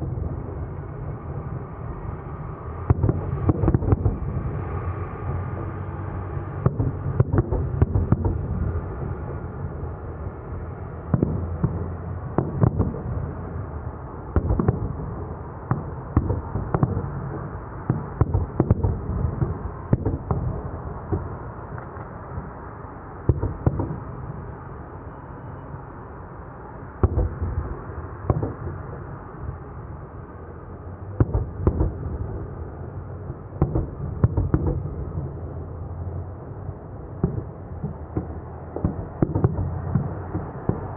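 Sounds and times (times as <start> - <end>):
low rumble of booms: 2.8 - 4.5, 6.5 - 9.8, 14.3 - 21.4, 31.1 - 35.4
fireworks bangs: 2.8 - 4.6, 6.6 - 9.8, 11.1 - 13.7, 14.3 - 22.5, 23.2 - 24.4, 27.0 - 29.1, 31.1 - 32.7, 33.3 - 35.4, 36.6 - 40.9.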